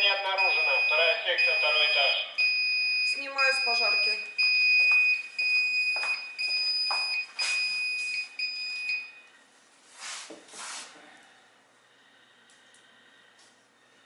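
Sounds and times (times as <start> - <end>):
fire alarm high-pitched tone: 0.0 - 9.3.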